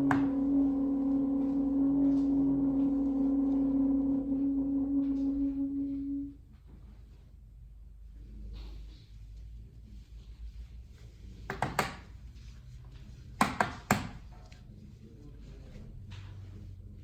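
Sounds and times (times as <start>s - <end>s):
long steady musical note: 0.0s - 6.4s.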